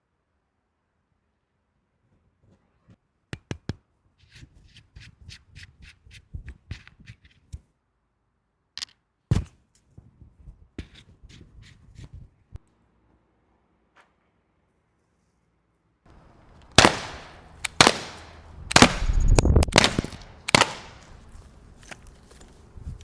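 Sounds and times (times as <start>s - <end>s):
sharp clicks: 16.5s - 21.2s
loud snap: 16.8s - 21.1s
packaging scraping and rustling: 21.0s - 23.0s.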